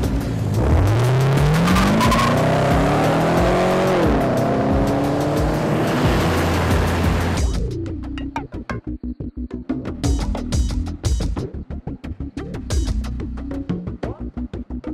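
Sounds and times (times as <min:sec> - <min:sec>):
car exhaust accelerating: 0:00.0 - 0:07.5
music with steady beat: 0:00.0 - 0:14.9.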